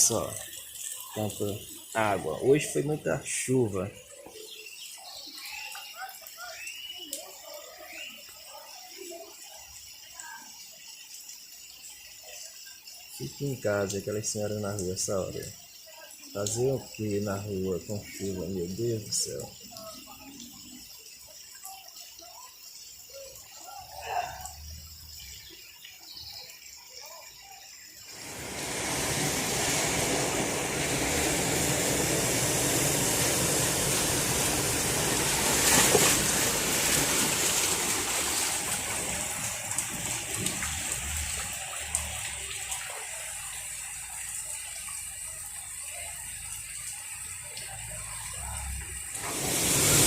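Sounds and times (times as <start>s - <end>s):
heavy rain: 0.0s - 8.2s, 28.0s - 50.0s
flood water running: 0.0s - 50.0s.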